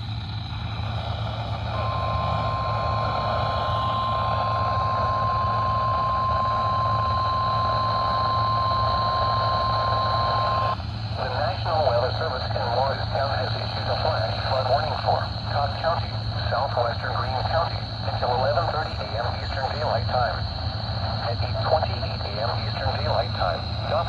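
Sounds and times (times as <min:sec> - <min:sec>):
steady alarm tone: 0:00.0 - 0:16.4
radio reception hiss: 0:00.0 - 0:24.0.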